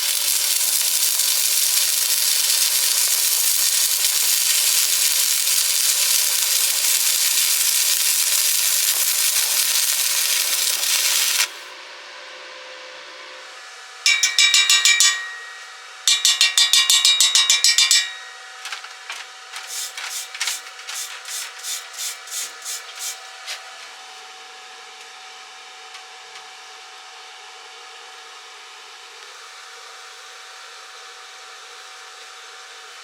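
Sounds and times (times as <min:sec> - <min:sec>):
hammer striking steel: 0:14.1 - 0:23.2.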